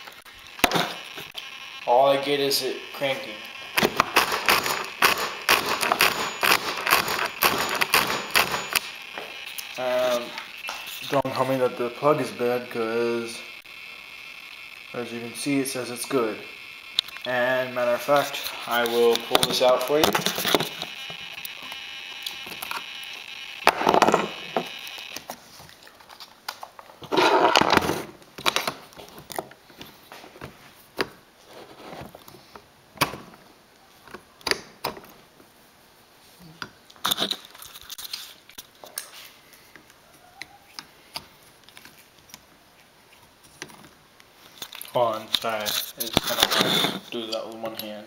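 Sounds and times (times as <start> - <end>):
steady whine: 0.0 - 25.4
tool clicks and scrapes: 3.7 - 11.2, 18.0 - 25.3, 44.6 - 47.2.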